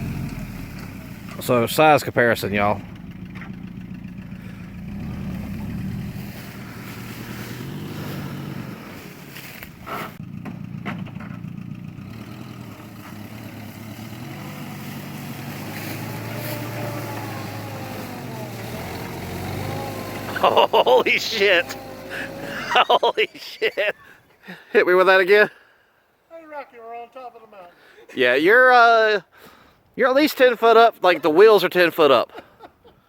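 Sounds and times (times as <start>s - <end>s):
jeep engine running under load: 0.0s - 23.8s.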